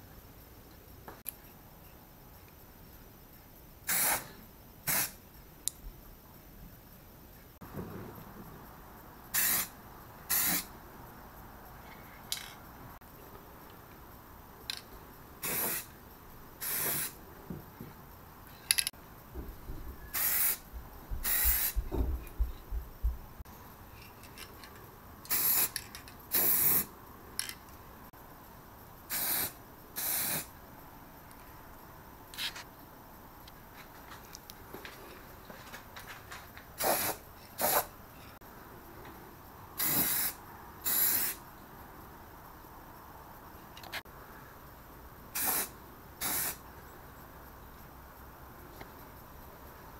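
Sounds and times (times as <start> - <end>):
aerosol spray can hissing: 3.9 - 5.2, 9.3 - 9.7, 10.3 - 10.7, 15.4 - 15.9, 16.6 - 17.2, 20.1 - 20.6, 21.2 - 21.8, 25.3 - 26.9, 29.1 - 30.5, 36.8 - 37.9, 39.8 - 41.4, 45.4 - 46.6.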